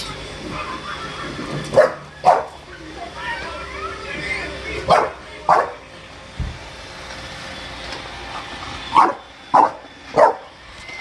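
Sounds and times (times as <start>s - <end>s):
robot vacuum humming: 0.0s - 11.0s
dog barking: 1.8s - 2.6s, 4.9s - 5.8s, 9.0s - 10.5s.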